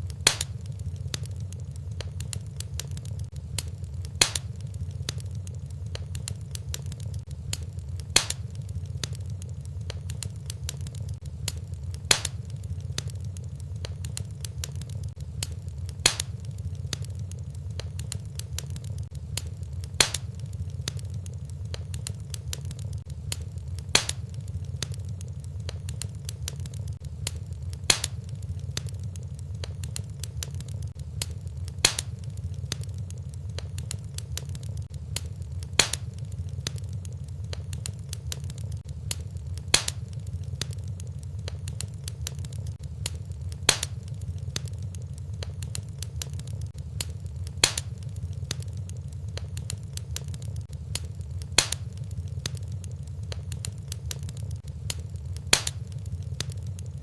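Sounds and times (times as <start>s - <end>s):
low rumble: 0.0s - 57.0s
wood fire crackling: 0.0s - 57.0s
sharp pop of fire: 0.1s - 1.4s, 2.0s - 5.3s, 6.0s - 9.2s, 11.4s - 13.2s, 14.8s - 17.1s, 19.4s - 21.0s, 23.3s - 25.0s, 27.2s - 28.9s, 31.2s - 32.9s, 35.2s - 40.8s, 42.8s - 44.7s, 47.0s - 50.3s, 50.9s - 52.6s, 54.4s - 56.6s.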